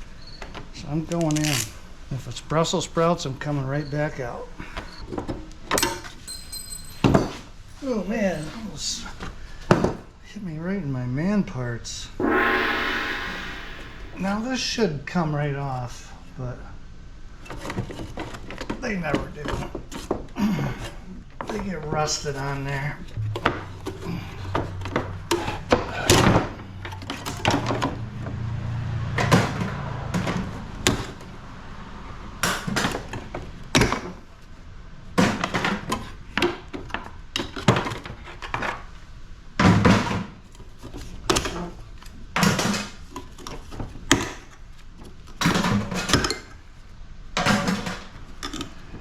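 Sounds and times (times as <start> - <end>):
low hum: 12.2 - 14.5, 23.2 - 25.3.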